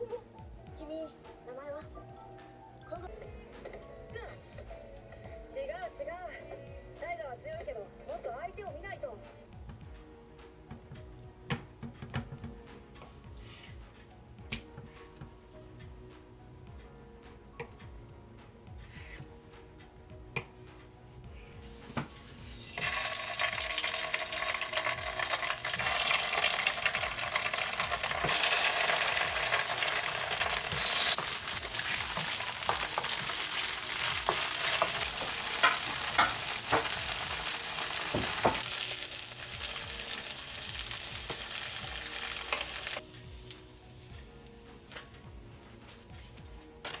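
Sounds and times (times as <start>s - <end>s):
food sizzling in a frying pan: 22.4s - 44.3s
stirring ticks and scrapes: 23.5s - 38.2s.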